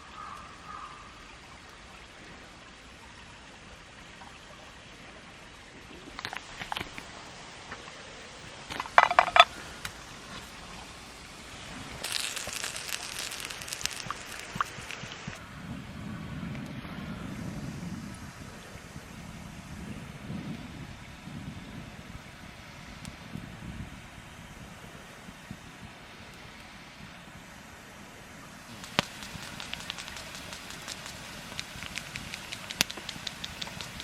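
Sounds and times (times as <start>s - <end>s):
hissing crackly noise: 0.0s - 34.0s.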